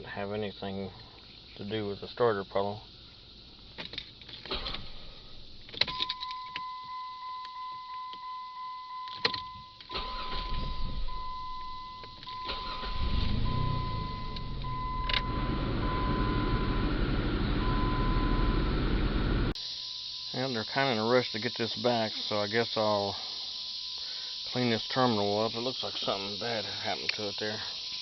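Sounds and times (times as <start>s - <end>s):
keys rattling: 5.7s - 6.7s
vehicle warning chime beeps: 5.9s - 17.0s, 17.6s - 18.7s, 19.8s - 26.2s
low rumble: 13.1s - 19.6s.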